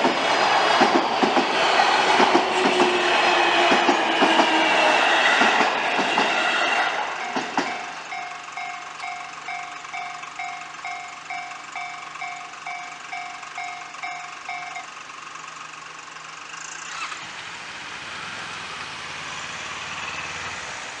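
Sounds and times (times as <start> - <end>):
vehicle engine and tyres: 0.0 - 21.0
level-crossing warning bell: 6.8 - 15.3.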